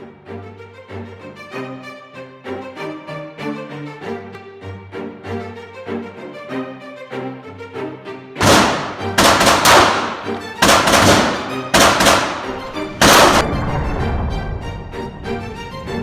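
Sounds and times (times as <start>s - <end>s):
background music: 0.0s - 16.0s
gunshots: 8.4s - 13.5s.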